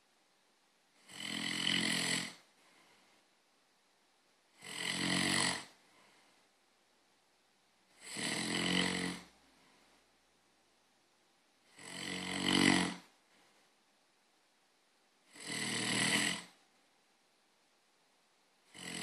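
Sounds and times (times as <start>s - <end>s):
person snoring: 1.0s - 2.9s, 4.5s - 5.8s, 8.0s - 9.4s, 11.7s - 13.1s, 15.3s - 16.6s, 18.7s - 19.0s.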